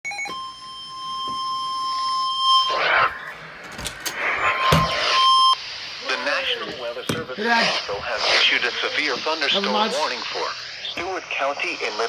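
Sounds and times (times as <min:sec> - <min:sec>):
steady emergency alert beep: 0:00.0 - 0:03.4, 0:04.4 - 0:05.6.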